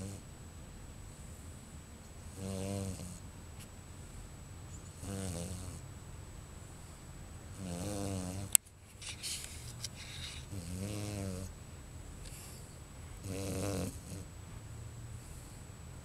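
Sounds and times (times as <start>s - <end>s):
dog snoring: 0.0s - 0.3s, 2.2s - 3.2s, 4.9s - 5.9s, 7.5s - 8.6s, 9.9s - 11.6s, 12.2s - 14.3s.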